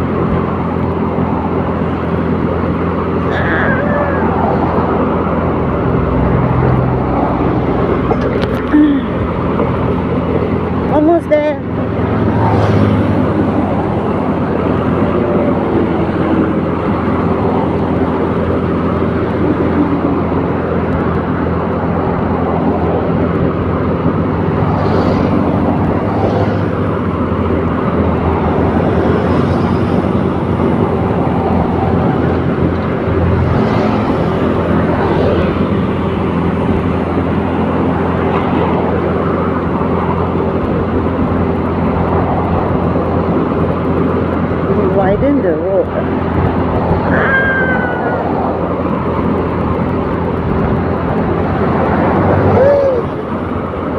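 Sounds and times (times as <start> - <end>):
road noise: 0.0 - 53.9
vehicle engine drone: 0.0 - 53.9.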